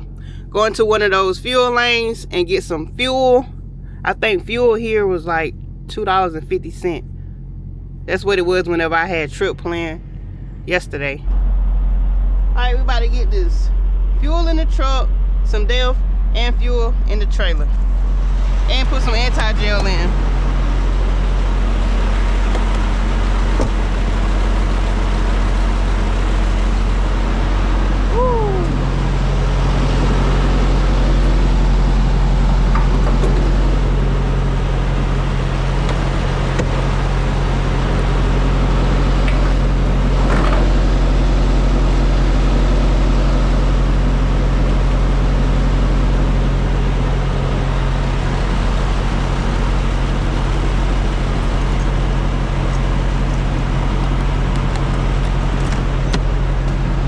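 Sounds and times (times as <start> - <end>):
diesel truck engine running: 0.0 - 57.0
short falling tone: 13.7 - 35.8.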